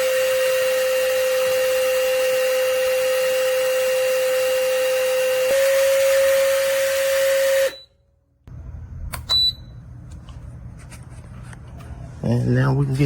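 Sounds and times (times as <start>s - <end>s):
hydraulic pump motor whining: 0.0s - 7.9s
short high beep: 7.6s - 8.0s, 9.2s - 9.7s
low hum: 8.0s - 12.9s.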